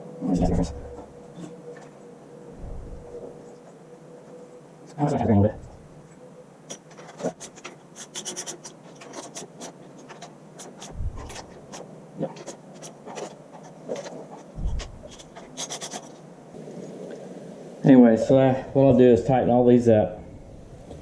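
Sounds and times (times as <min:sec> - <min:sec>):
dull thuds: 0:14.6 - 0:15.2.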